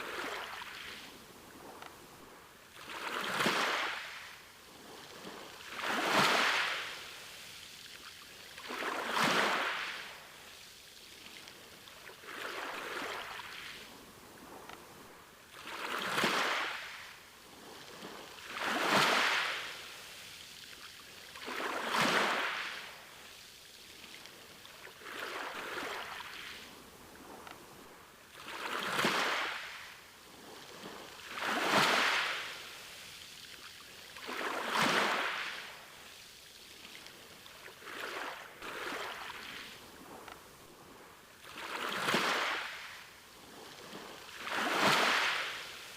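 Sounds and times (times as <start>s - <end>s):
ocean waves breaking on beach: 0.0s - 45.9s.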